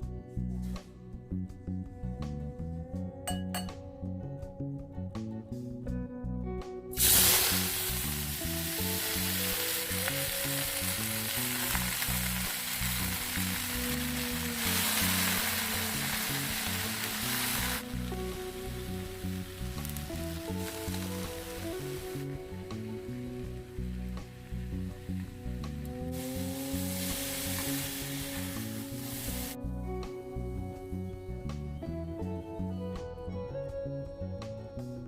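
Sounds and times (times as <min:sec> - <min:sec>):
background music with steady beat: 0:00.0 - 0:35.0
food sizzling in hot oil: 0:07.0 - 0:29.6.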